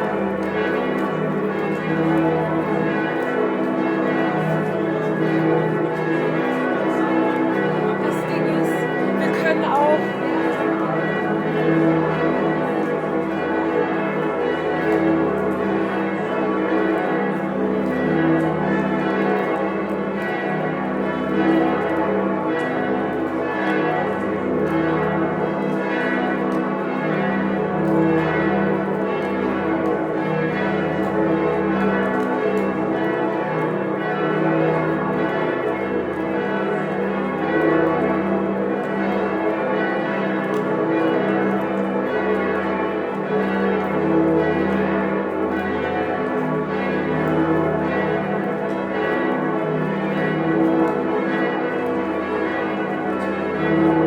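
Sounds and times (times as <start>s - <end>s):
church bells pealing: 0.0s - 54.0s.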